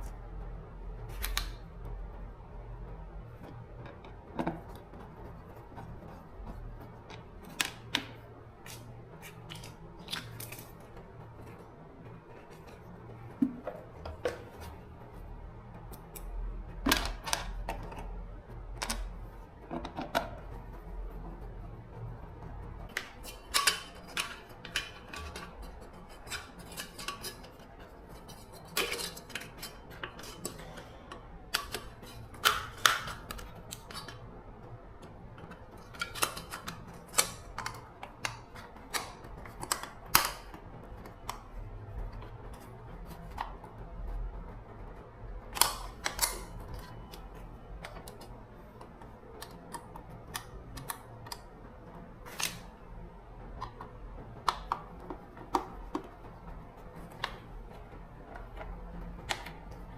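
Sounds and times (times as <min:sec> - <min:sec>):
metal parts and tools clicking: 0:22.9 - 0:34.3.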